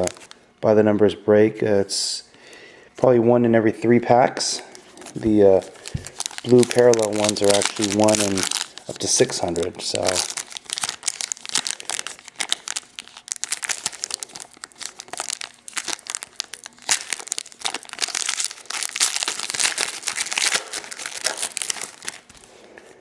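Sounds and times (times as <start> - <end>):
foil wrapper tearing and crinkling: 4.7 - 22.5.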